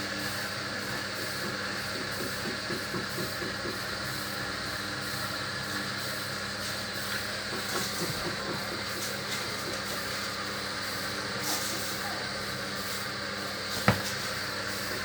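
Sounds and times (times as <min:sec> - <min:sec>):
washer dryer motor hum: 0:00.0 - 0:03.9, 0:07.1 - 0:15.0.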